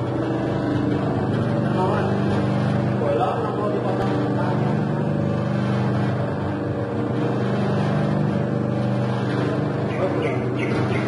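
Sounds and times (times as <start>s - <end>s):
dough mixer machine humming: 0.0s - 11.0s.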